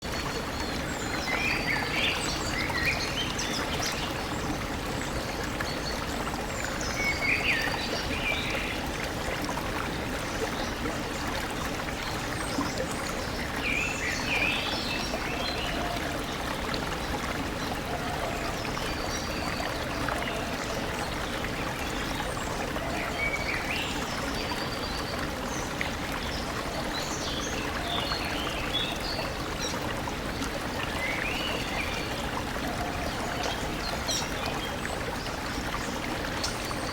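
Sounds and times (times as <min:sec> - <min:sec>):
stream running: 0:00.0 - 0:36.9.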